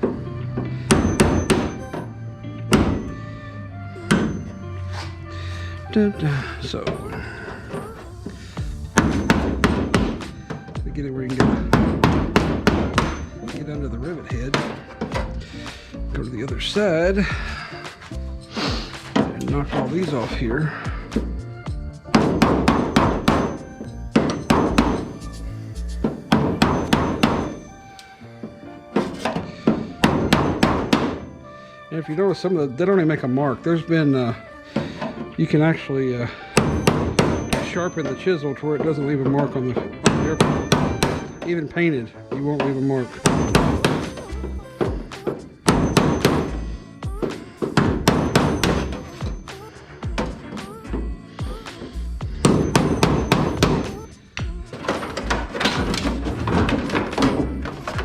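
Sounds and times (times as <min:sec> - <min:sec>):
hammer striking a chisel: 0:00.9 - 0:02.0, 0:02.7 - 0:03.1, 0:08.9 - 0:10.7, 0:11.3 - 0:13.6, 0:22.1 - 0:25.2, 0:26.0 - 0:27.6, 0:29.0 - 0:31.2, 0:36.6 - 0:38.2, 0:40.0 - 0:41.5, 0:42.6 - 0:44.3, 0:45.1 - 0:46.6, 0:47.2 - 0:49.6.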